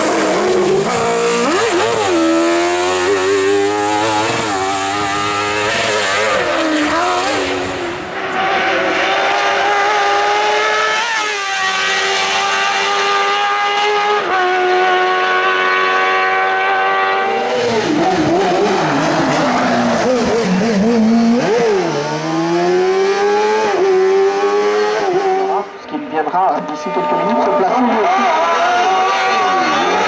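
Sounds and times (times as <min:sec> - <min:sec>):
motorcycle engine at high revs: 0:00.0 - 0:25.8, 0:26.8 - 0:30.0.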